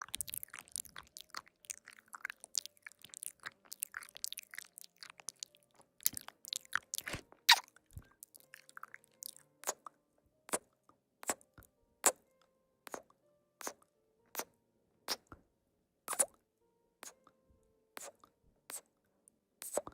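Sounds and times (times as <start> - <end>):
food being crunched and chewed: 0.0 - 9.8.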